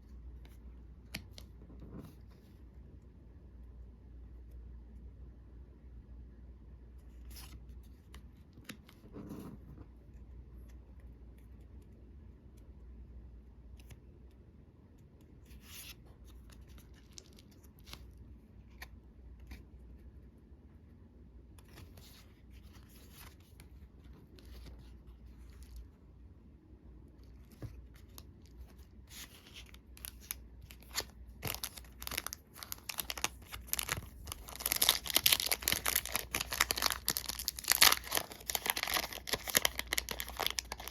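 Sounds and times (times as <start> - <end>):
foil wrapper crinkling: 30.0 - 40.9.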